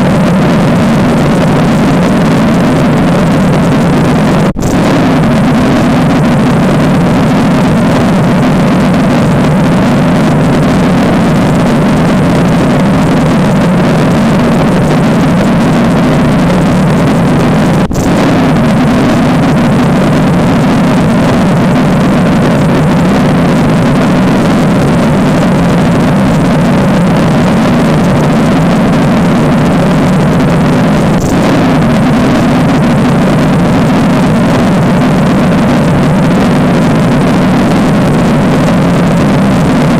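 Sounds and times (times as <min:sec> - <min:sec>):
loud droning rumble: 0:00.0 - 0:39.9.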